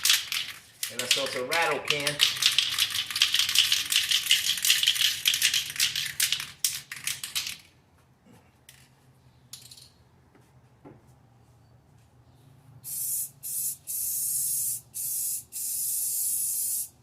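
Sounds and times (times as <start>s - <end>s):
aerosol can ball rattling: 0.0s - 7.6s
spray can hiss: 12.8s - 17.0s.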